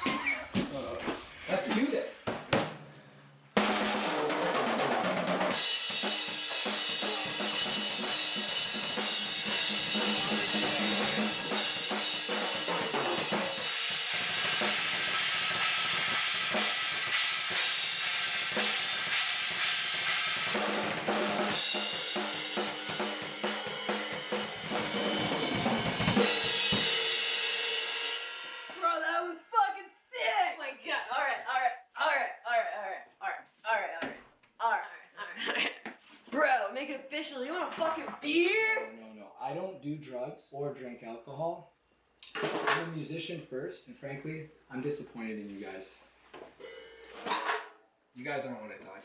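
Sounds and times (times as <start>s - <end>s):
cymbals washing: 3.6s - 29.0s, 46.6s - 47.6s
drum kit solo: 3.6s - 29.3s, 46.6s - 47.7s.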